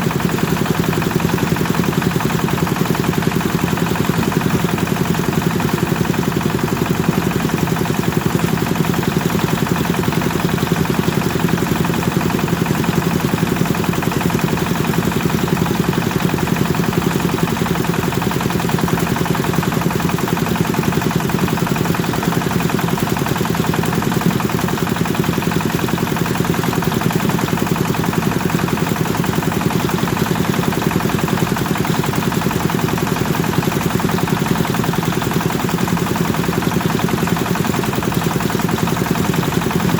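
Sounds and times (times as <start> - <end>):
thresher engine running: 0.0 - 39.9.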